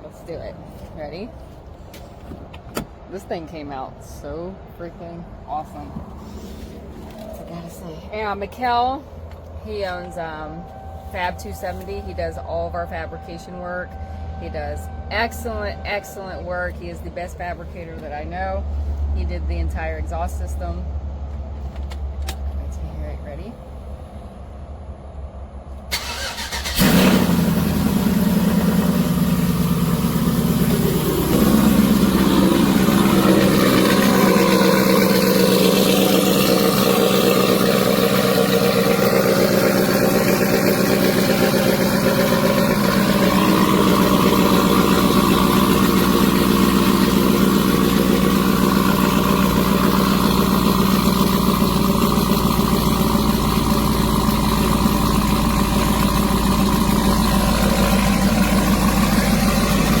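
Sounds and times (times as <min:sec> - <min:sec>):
engine idling loudly: 0:26.0 - 1:00.0.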